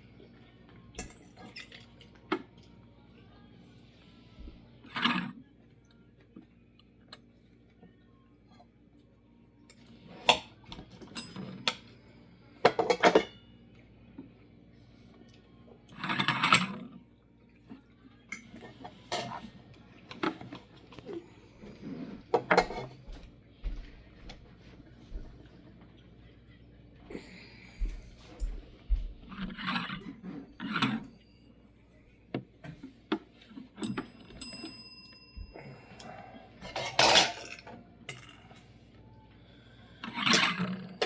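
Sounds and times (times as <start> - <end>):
cutlery clinking on a plate: 12.6 - 13.4, 22.3 - 23.0, 36.6 - 38.6.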